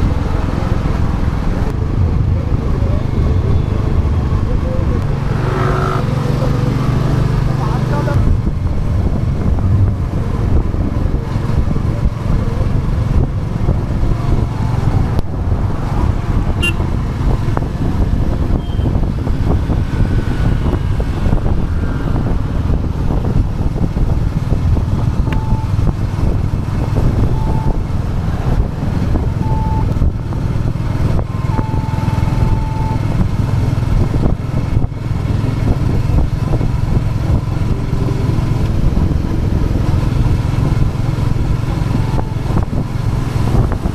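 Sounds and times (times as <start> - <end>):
motorcycle engine running: 0.0 - 43.9
short beeps: 25.2 - 25.8, 27.3 - 27.8, 29.4 - 29.9, 31.3 - 33.1.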